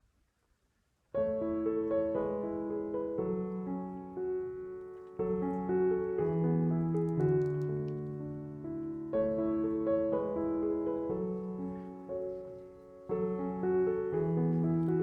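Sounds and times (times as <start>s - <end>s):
piano music: 1.2s - 15.0s.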